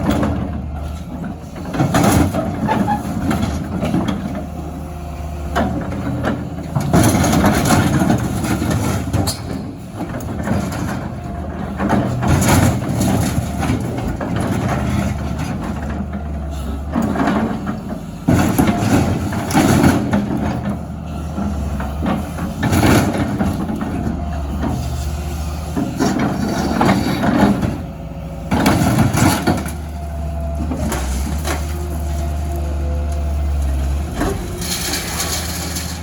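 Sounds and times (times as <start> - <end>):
excavator engine running: 0.0 - 36.0
sheet metal crunching and scraping: 33.8 - 36.0.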